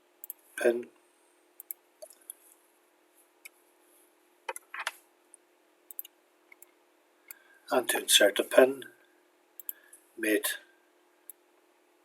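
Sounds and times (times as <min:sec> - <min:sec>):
low steady hum: 0:00.0 - 0:12.0
computer mouse clicks: 0:00.2 - 0:00.4, 0:01.6 - 0:02.4, 0:04.5 - 0:05.0, 0:05.9 - 0:07.4, 0:09.6 - 0:09.8.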